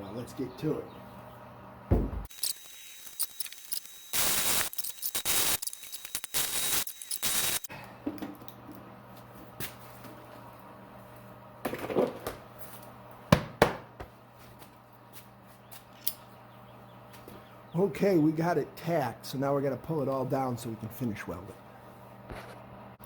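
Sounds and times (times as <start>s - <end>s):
sharp knocks: 1.9s - 2.3s
crackling welding arc: 2.3s - 7.7s.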